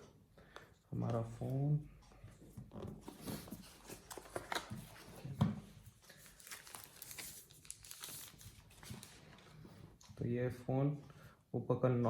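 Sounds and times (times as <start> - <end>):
plastic packaging crinkling: 6.1 - 9.4.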